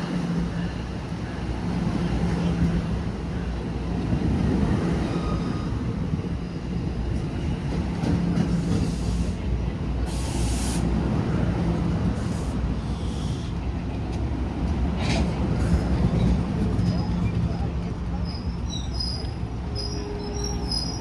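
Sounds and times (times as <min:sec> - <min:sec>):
electric train rumbling: 0:00.0 - 0:21.0
hiss of air: 0:10.1 - 0:10.9.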